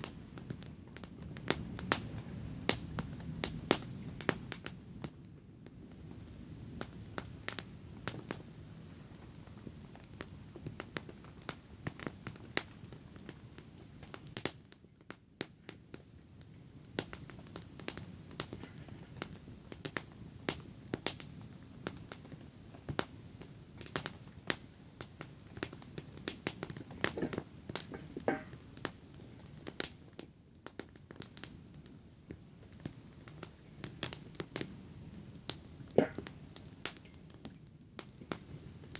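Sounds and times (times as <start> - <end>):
campfire crackling: 0.0 - 38.9
low background noise: 0.0 - 38.9.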